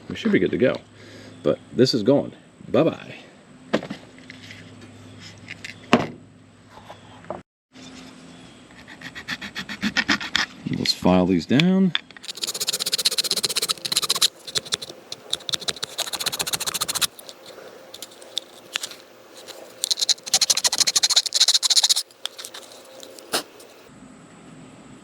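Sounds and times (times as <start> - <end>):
hand file rasping: 12.2 - 23.9.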